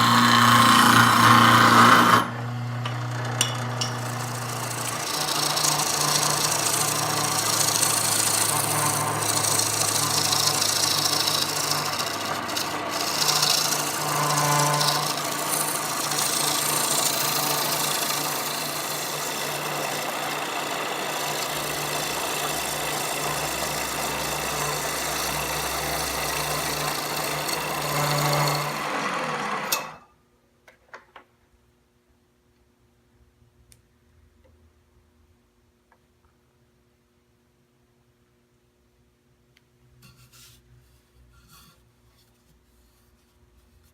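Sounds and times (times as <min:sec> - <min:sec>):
wood lathe tool rasping: 0:00.0 - 0:30.0.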